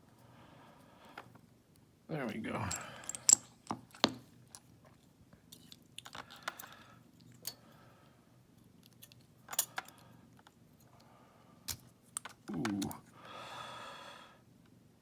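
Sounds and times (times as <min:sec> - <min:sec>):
metallic lock parts clicking: 0:02.7 - 0:04.2, 0:08.8 - 0:10.0.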